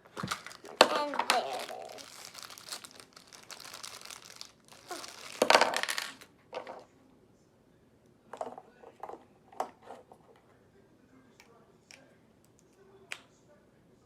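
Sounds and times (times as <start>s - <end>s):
plastic packaging crinkling: 0.0s - 6.2s
plastic pieces clicking: 0.2s - 6.8s.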